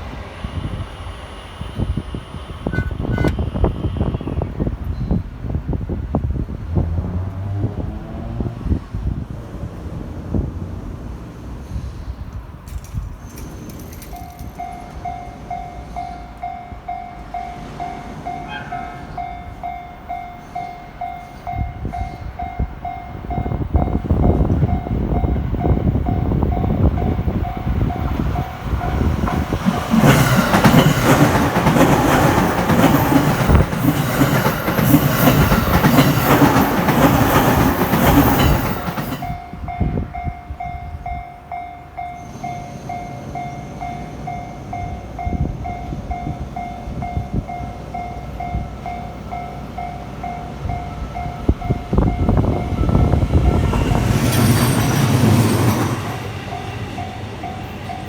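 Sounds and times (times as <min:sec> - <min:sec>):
crossing alarm bell dinging: 0:02.6 - 0:04.2, 0:13.4 - 0:58.0
train wheels clattering: 0:12.6 - 0:16.6, 0:25.6 - 0:39.4, 0:50.8 - 0:58.0.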